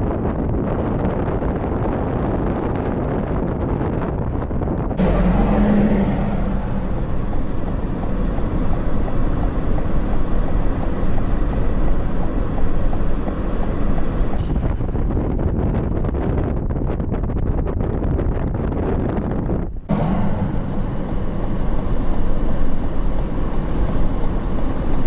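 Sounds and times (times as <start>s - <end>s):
vehicle and road rumble: 5.0s - 16.2s, 19.6s - 25.0s.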